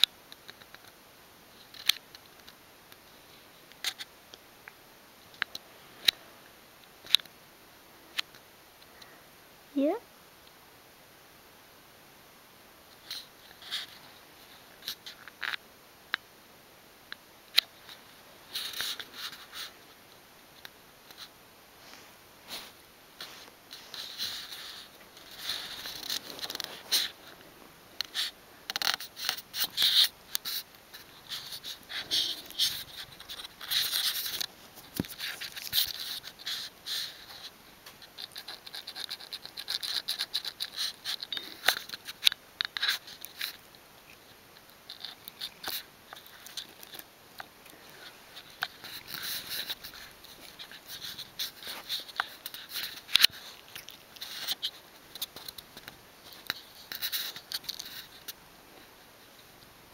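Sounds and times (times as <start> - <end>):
scratching and scraping: 21.1 - 27.4, 28.0 - 58.4.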